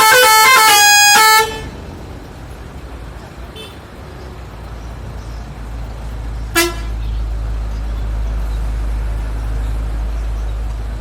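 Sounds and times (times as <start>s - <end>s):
sharp air horn blast: 0.0s - 1.7s, 6.5s - 7.0s
steady low rumble: 1.4s - 11.0s.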